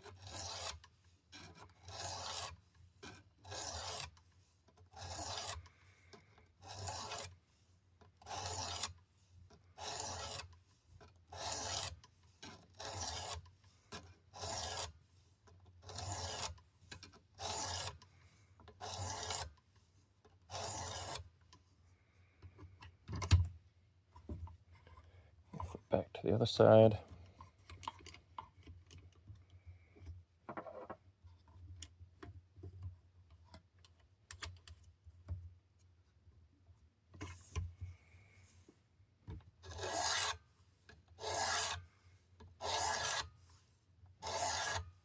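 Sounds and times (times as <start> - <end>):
sharpening stone rasping on blade: 0.2 - 0.8, 1.4 - 4.2, 5.0 - 5.6, 6.6 - 7.3, 8.3 - 9.0, 9.8 - 10.5, 11.4 - 12.0, 12.8 - 13.4, 14.4 - 15.0, 15.9 - 16.6, 17.4 - 18.0, 18.8 - 19.5, 20.5 - 21.3, 39.6 - 40.4, 41.2 - 41.8, 42.6 - 43.3, 44.2 - 44.8.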